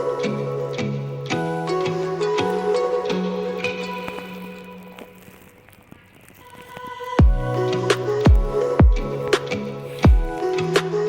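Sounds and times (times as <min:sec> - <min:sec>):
music with kick drum and snare: 0:07.2 - 0:11.0
steady bass line: 0:07.2 - 0:11.0.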